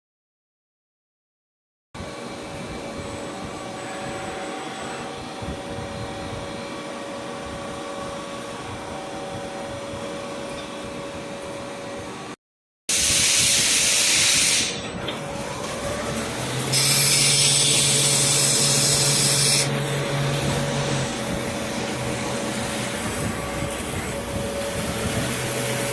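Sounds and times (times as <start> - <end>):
loud high hissing: 12.9 - 14.8, 16.7 - 25.9
lathe motor hum: 14.9 - 25.9.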